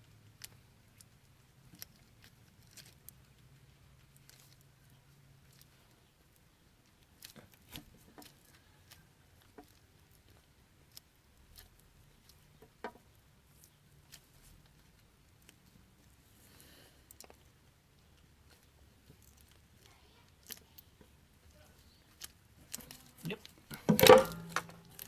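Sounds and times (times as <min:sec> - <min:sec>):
small clicks and taps of tools: 0:06.3 - 0:15.8.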